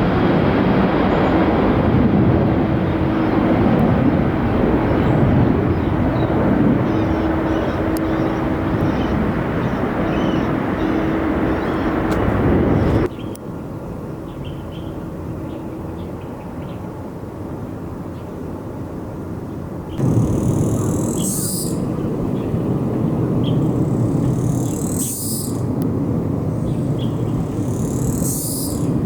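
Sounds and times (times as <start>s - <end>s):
jet engines running loud: 0.0s - 13.1s, 20.0s - 29.0s
faint bird chirps: 20.0s - 25.8s, 26.6s - 29.0s.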